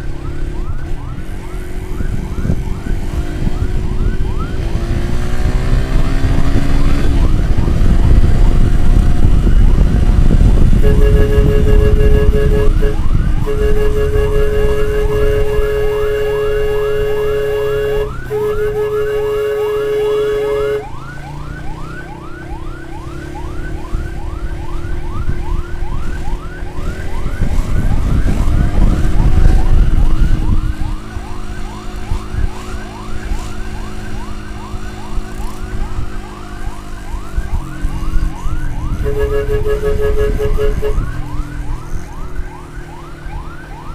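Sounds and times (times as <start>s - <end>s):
electronic siren yelping: 0.0s - 5.0s, 6.0s - 43.9s.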